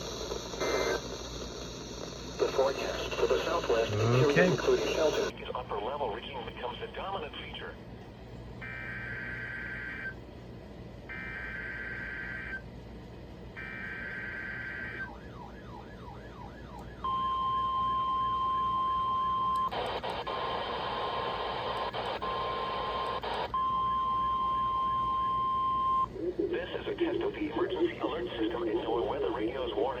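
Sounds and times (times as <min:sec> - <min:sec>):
loud static hiss: 0:00.0 - 0:07.6, 0:19.7 - 0:23.5
steady warning alarm tone: 0:08.6 - 0:10.2, 0:11.1 - 0:12.6, 0:13.6 - 0:19.8.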